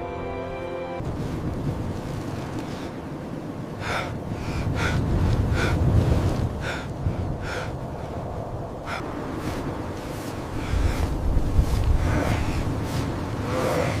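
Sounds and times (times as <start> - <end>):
wind rumble: 1.0 - 14.0
man breathing hard: 6.6 - 8.2.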